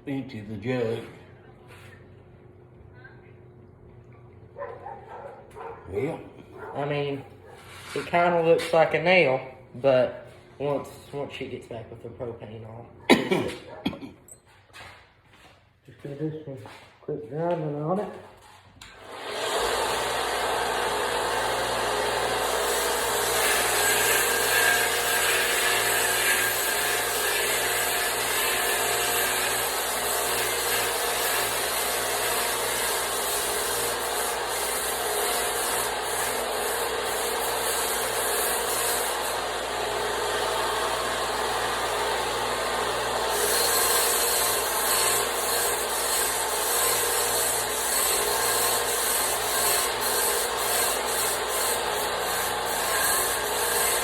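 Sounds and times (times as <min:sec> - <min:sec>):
grinder grinding steel: 0:19.0 - 0:54.0.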